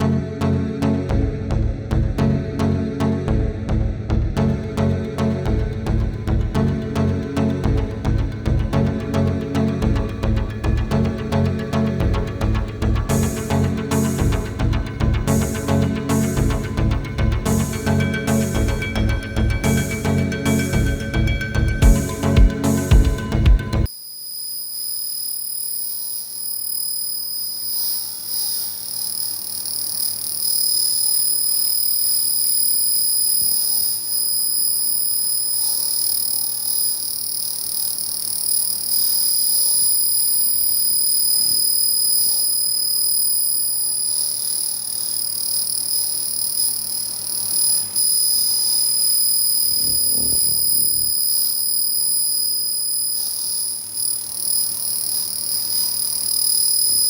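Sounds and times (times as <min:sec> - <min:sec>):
laser cleaner high-pitched whine: 0:24.3 - 0:57.0.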